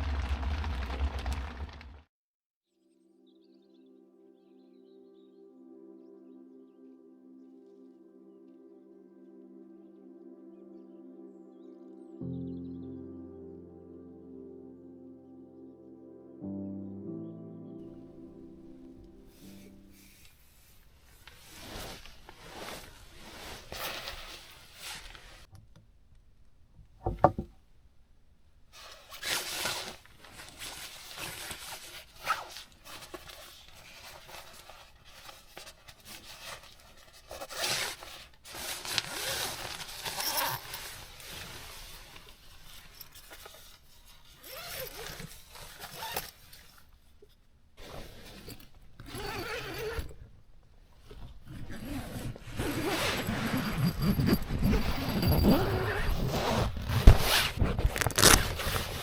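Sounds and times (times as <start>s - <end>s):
fabric and gear rustling: 19.3s - 25.5s, 28.8s - 59.0s.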